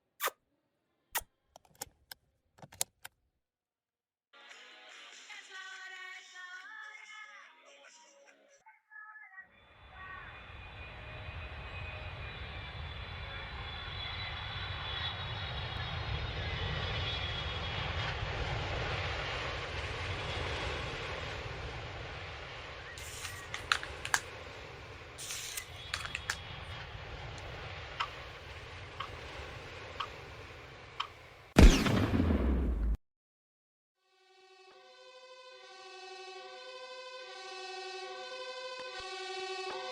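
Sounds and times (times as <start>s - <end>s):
airliner jet engines rumbling: 9.7s - 31.6s
sharp clicks: 23.0s - 24.4s, 25.2s - 26.6s, 31.0s - 31.8s.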